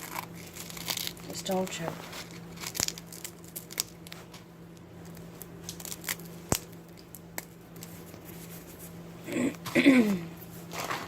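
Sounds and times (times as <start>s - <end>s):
ice cream cone crunching: 0.0s - 4.4s, 5.0s - 8.5s.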